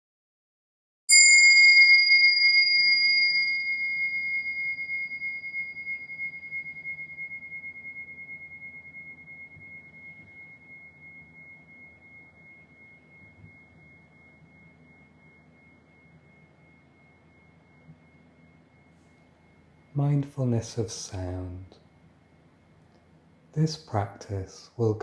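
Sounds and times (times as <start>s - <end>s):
meditation bell ringing: 1.1s - 20.2s.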